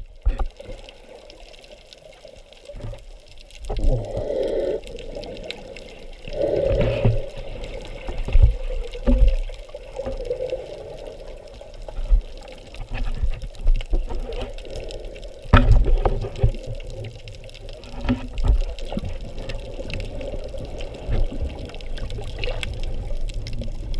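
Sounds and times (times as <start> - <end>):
water sloshing and swirling: 0.0 - 23.9.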